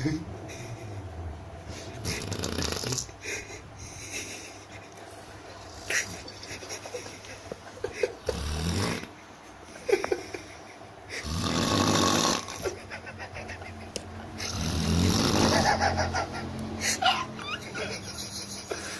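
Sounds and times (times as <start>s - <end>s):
croaky rasping snores: 2.0s - 3.1s, 8.3s - 9.1s, 11.2s - 12.6s, 14.4s - 15.7s.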